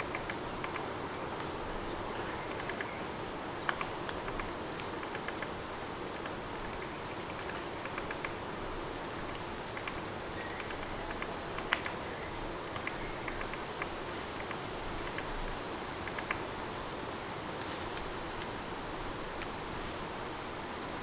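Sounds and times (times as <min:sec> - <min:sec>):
steady rain: 0:00.0 - 0:21.0.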